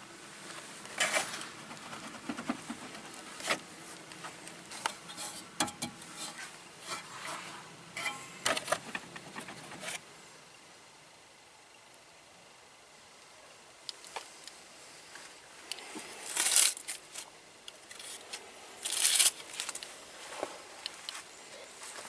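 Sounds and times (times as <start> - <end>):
tools and metal parts clinking: 8.0 - 10.0.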